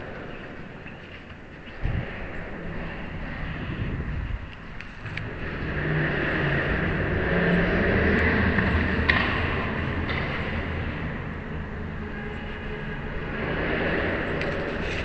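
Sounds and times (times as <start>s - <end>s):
vehicle rumbling by: 1.8s - 15.0s.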